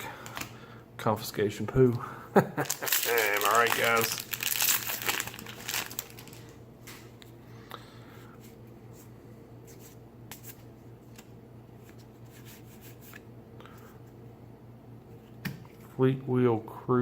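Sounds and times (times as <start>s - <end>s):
cards being handled: 2.8s - 7.1s, 9.7s - 13.3s.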